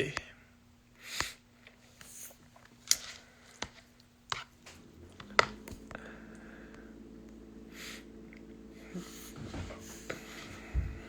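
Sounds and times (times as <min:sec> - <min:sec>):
steady low hum: 0:04.1 - 0:11.0.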